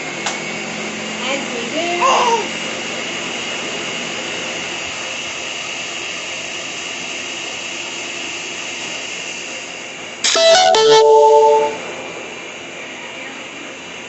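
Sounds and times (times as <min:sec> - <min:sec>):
electric blender whirring: 0:00.0 - 0:06.0.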